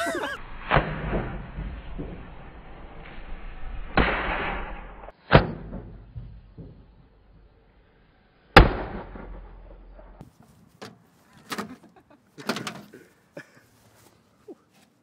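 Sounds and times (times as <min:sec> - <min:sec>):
firework bang: 0:00.4 - 0:03.2, 0:03.8 - 0:06.0.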